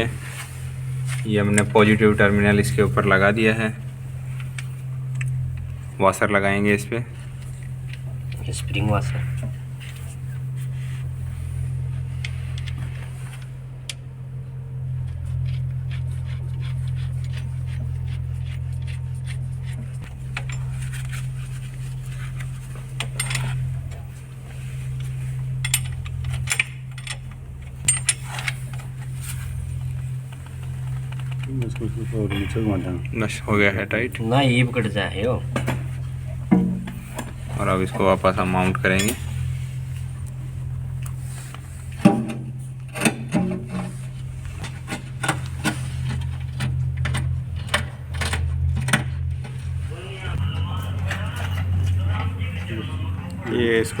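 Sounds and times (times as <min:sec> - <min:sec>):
steady low hum: 0:00.0 - 0:54.0
metallic clinks of spanner and nut: 0:25.6 - 0:28.8
hand tools clinking on metal: 0:38.7 - 0:39.4.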